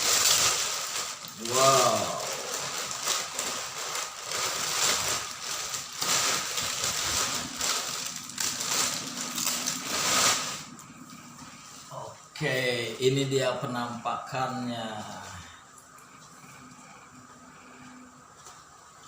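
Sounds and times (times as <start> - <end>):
plastic packaging crinkling: 0.0 - 11.2.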